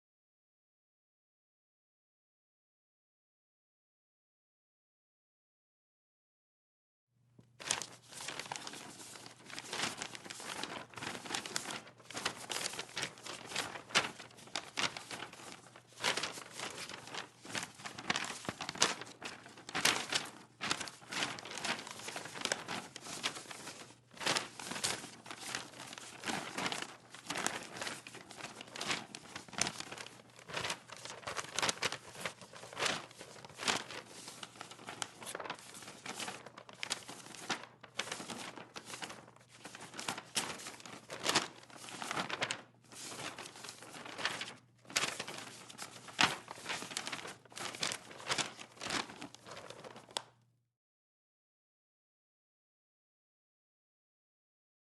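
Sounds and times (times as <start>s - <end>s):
paper rustling: 7.4s - 50.4s.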